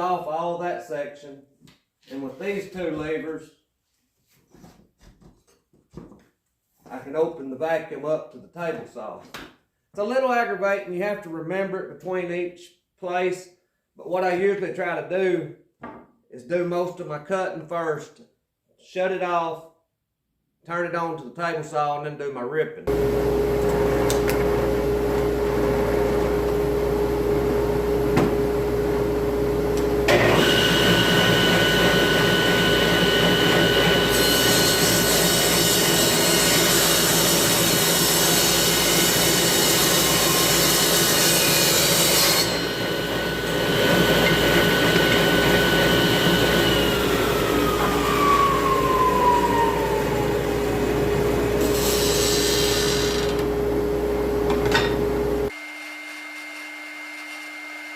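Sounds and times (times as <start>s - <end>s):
dust vacuum humming: 22.9s - 41.1s, 41.7s - 55.5s
table saw cutting wood: 22.9s - 57.9s
saw blade spinning down: 30.1s - 53.6s.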